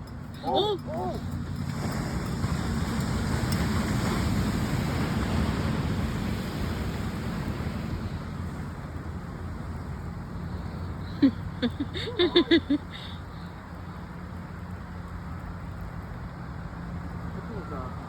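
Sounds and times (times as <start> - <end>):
surf washing in: 0.4 - 14.2.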